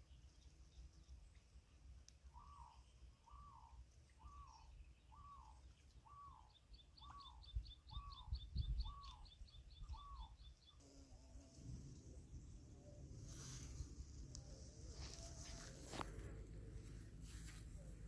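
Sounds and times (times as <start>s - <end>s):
wind rumble on microphone: 7.5s - 10.2s.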